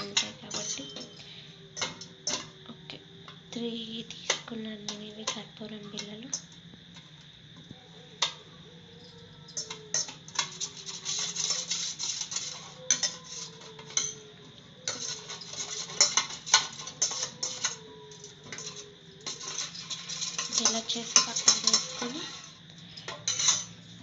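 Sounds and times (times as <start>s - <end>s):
metal utensils clinking on metal: 0.0s - 2.6s, 4.3s - 6.6s, 8.2s - 24.0s
steady low hum: 0.0s - 24.0s.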